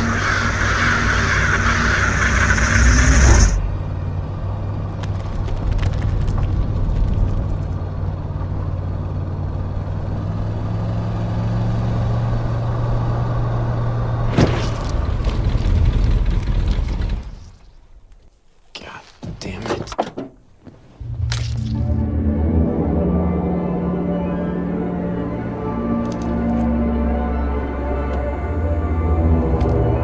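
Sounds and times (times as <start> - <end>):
noisy rising tone: 0.0 - 4.8, 21.0 - 30.0
vehicle engine rumble: 0.0 - 30.0.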